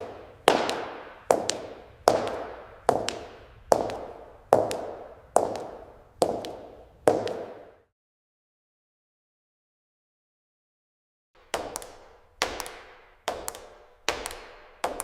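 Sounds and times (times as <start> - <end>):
high-heel footsteps on hard floor: 0.0 - 7.9, 11.4 - 15.0.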